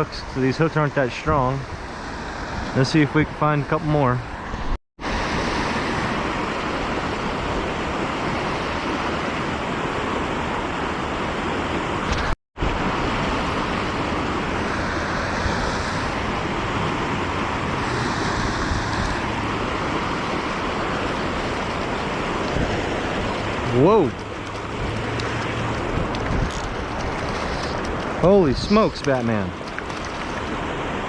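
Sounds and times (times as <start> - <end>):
river rushing over rocks: 12.7 - 31.0.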